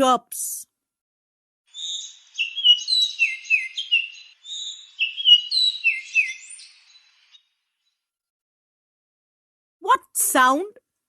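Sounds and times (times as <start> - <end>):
sparrow chirping: 1.7 - 8.1.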